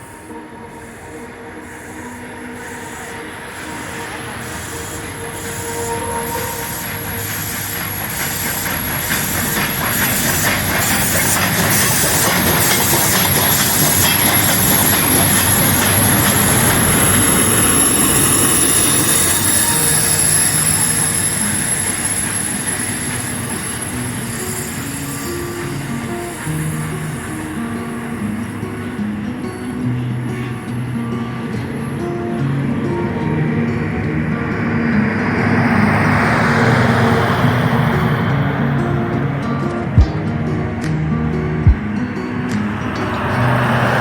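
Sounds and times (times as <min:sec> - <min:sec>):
steam train rumble and rattle: 0:00.0 - 0:27.5.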